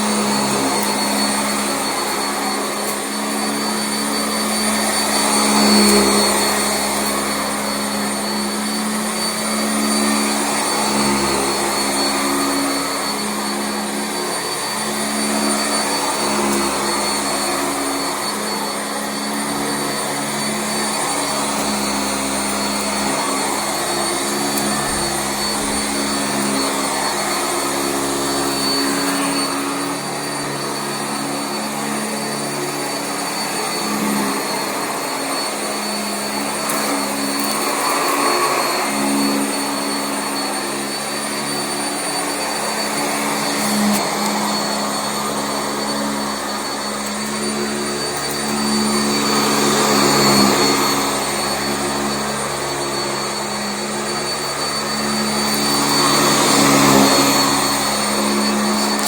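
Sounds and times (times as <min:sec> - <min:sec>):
upright vacuum running on carpet: 0:00.0 - 0:59.0.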